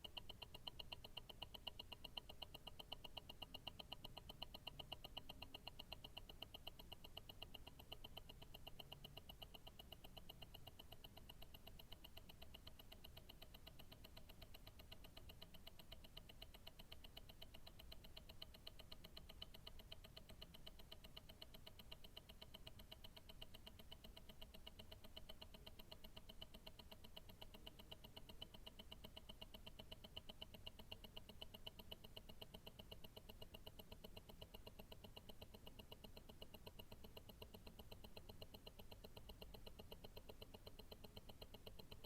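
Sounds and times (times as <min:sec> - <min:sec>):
faint watch ticking: 0:00.0 - 0:42.0.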